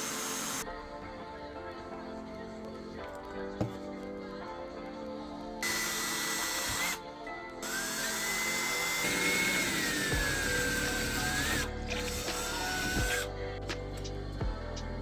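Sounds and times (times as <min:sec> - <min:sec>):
small power tool whining: 0:00.0 - 0:00.6, 0:07.6 - 0:13.2.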